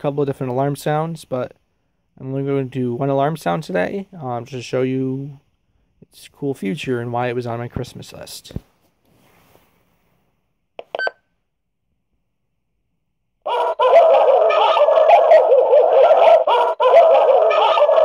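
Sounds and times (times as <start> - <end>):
synthetic dog barking alarm: 13.5 - 18.0.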